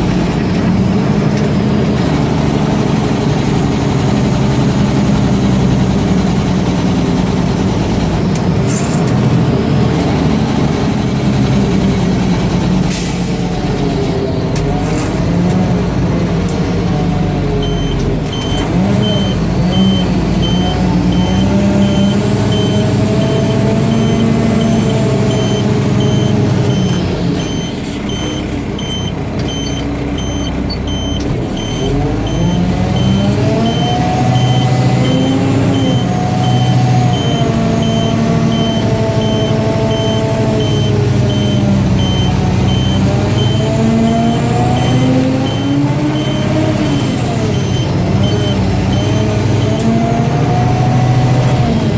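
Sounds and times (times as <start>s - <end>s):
diesel engine revving: 0.0s - 51.9s
backup alarm beeping: 17.6s - 50.1s.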